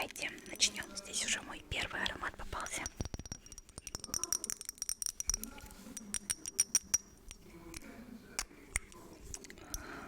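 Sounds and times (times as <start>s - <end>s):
taps on glass bottle: 2.8s - 7.5s.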